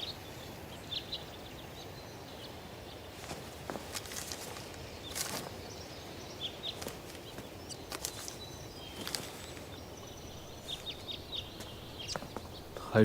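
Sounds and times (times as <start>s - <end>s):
steady low hiss: 0.0s - 13.0s
bird chirps: 4.1s - 13.0s.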